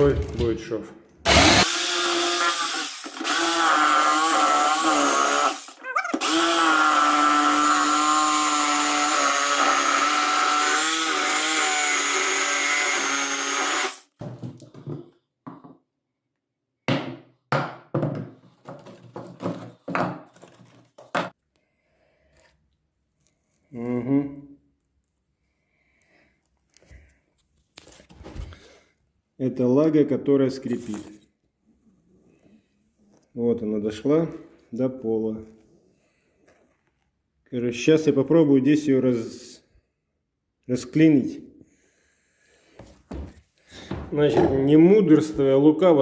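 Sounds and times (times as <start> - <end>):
electric jigsaw sawing wood: 1.2 - 14.1.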